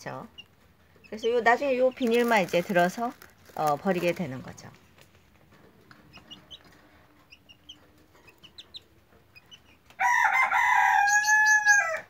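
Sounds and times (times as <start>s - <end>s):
chick peeping: 0.0s - 3.0s, 5.4s - 12.0s.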